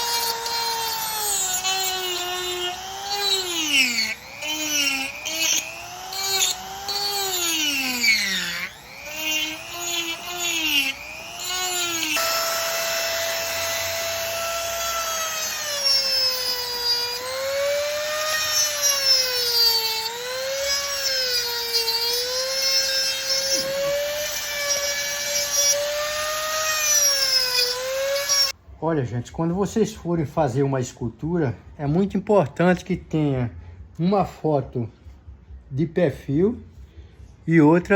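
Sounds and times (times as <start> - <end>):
rotary tool whining carving wood: 0.0 - 28.6.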